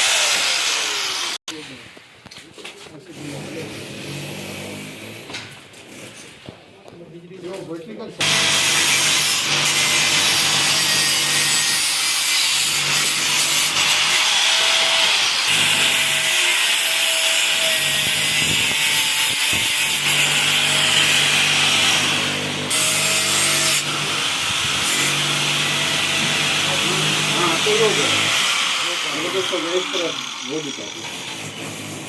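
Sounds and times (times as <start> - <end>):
angle grinder cutting: 0.0 - 1.4, 8.2 - 32.0.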